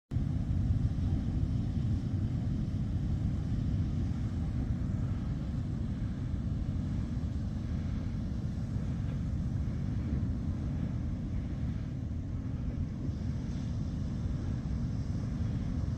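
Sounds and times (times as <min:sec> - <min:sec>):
low rumble of sea waves: 0:00.1 - 0:15.9.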